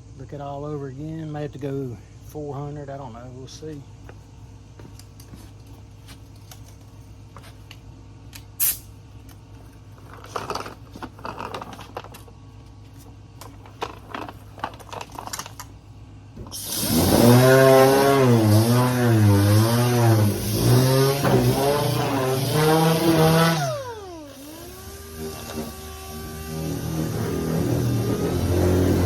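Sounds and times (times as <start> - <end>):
power sander whining: 16.4 - 29.0.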